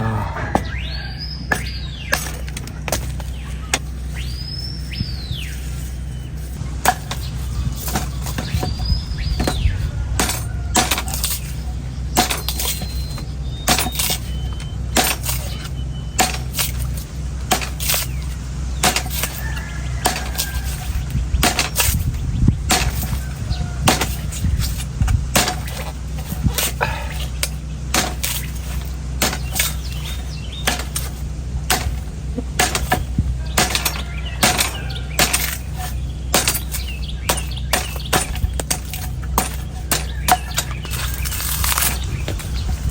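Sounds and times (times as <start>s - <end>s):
steady low hum: 0.0s - 42.9s
knife chopping coconut husk: 16.2s - 42.9s.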